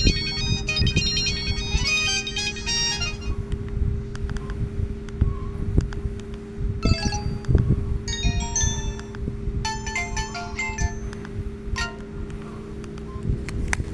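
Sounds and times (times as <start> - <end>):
phone ringtone chime notes: 0.0 - 3.3, 6.8 - 11.2, 11.8 - 12.3.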